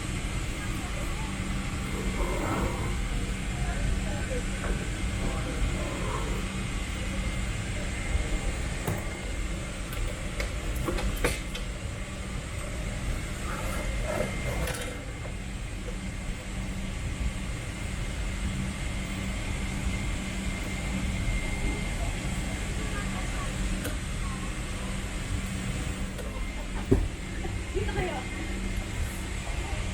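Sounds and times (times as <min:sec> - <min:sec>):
airplane cabin rumble and hiss: 0:00.0 - 0:29.9
faint steady whine: 0:00.0 - 0:29.9.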